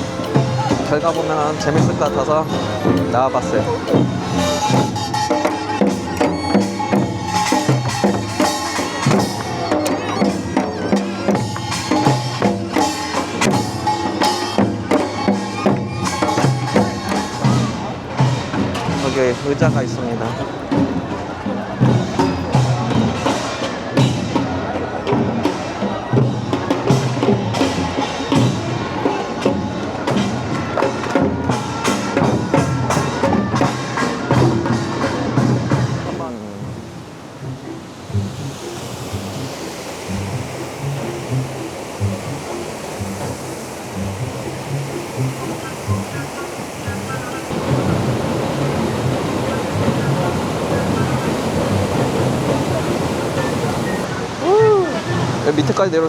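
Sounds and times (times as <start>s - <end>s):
upbeat music with drum beat: 0.0s - 52.1s.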